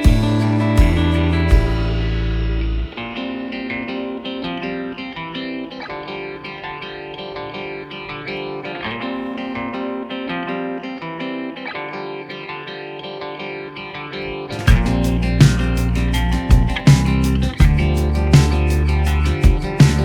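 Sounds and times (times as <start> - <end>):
heavy bass and drum hits: 0.0 - 2.9, 14.7 - 20.0
plucked guitar music: 0.0 - 20.0.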